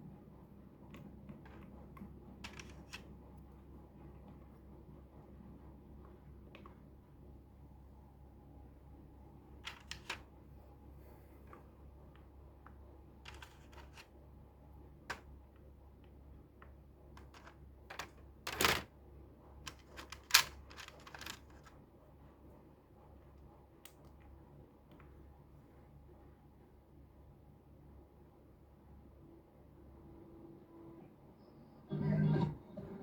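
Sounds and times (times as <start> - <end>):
mechanical keyboard keys clacking: 2.4 - 3.0, 9.6 - 10.2, 13.3 - 14.0, 17.2 - 18.9, 19.7 - 21.7.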